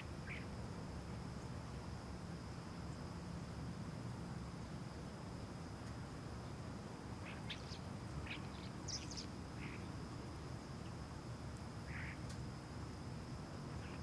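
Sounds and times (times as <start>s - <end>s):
small birds chirping: 0.0s - 0.6s, 6.4s - 11.1s, 11.8s - 12.4s
high-pitched insect drone: 7.0s - 14.0s.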